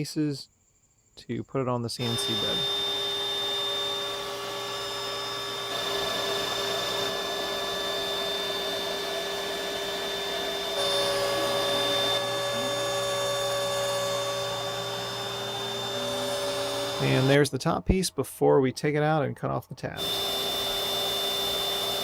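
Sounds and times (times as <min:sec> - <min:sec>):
router spindle whining cutting wood: 0:02.0 - 0:17.5, 0:20.0 - 0:22.0.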